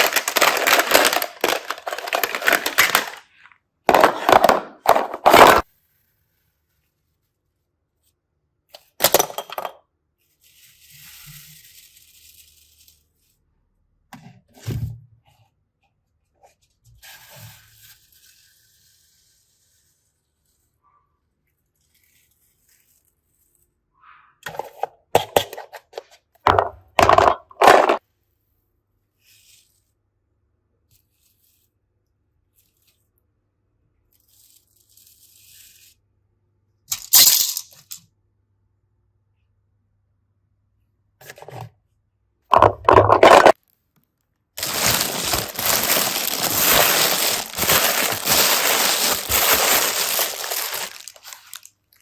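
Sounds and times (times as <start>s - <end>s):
rustling: 44.6s - 52.0s.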